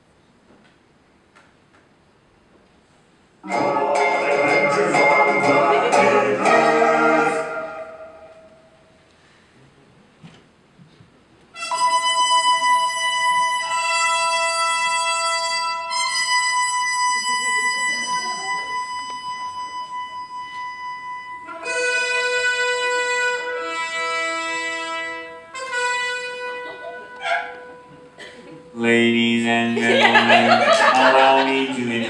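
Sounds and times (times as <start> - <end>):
music of long held chords: 3.4 - 8.8, 11.6 - 31.7.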